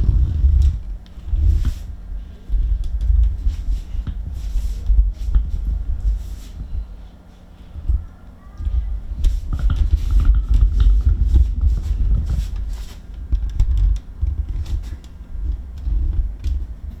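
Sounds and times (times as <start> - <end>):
low thumps: 0.0 - 6.9.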